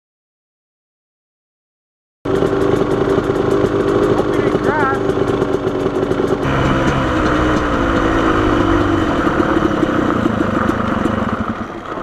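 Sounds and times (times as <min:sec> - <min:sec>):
motorcycle engine running: 0:02.3 - 0:12.0
rough noise: 0:06.4 - 0:12.0.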